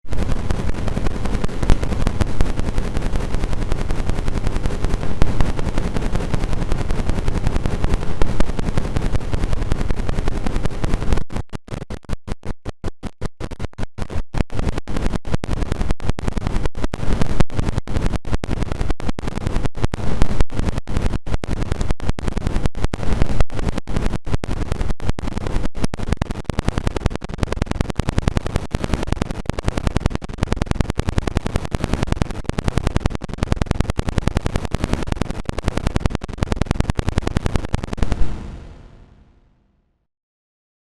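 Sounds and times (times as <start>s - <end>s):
distorted alarm tone: 37.8s - 39.2s.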